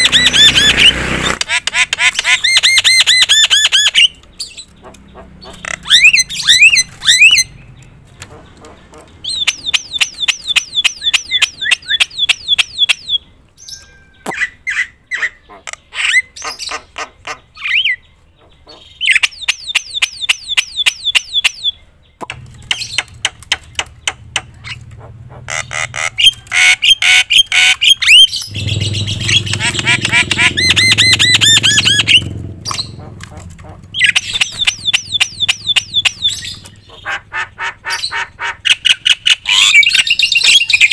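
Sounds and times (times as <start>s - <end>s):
bird whistled calls: 0.0s - 1.4s, 5.4s - 7.6s, 9.2s - 16.9s, 26.1s - 33.1s, 33.9s - 37.1s
bird harsh calls: 0.0s - 40.9s.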